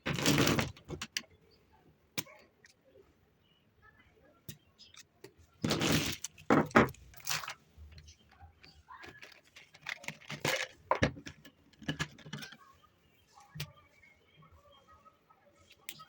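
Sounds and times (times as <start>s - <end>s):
small objects clicking and knocking: 4.5s - 12.6s.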